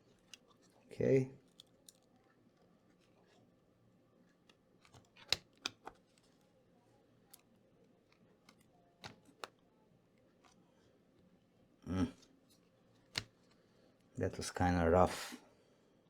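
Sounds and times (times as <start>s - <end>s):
plastic clicks of laptop handling: 0.0s - 0.8s, 1.4s - 3.4s, 4.3s - 6.5s, 7.3s - 9.7s, 12.5s - 13.6s.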